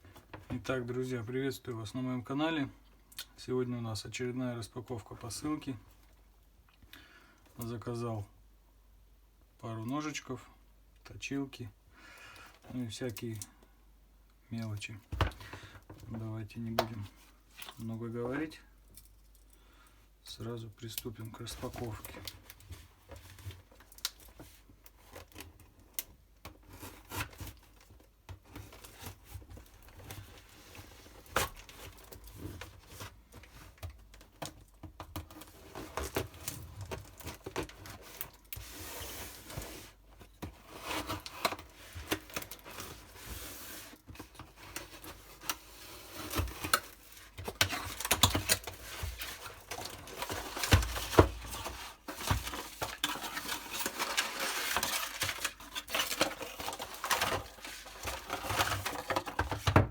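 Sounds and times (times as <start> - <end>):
clicks and knocks of handling: 15.1 - 17.9, 46.2 - 59.9
packaging tearing and crinkling: 44.8 - 59.6.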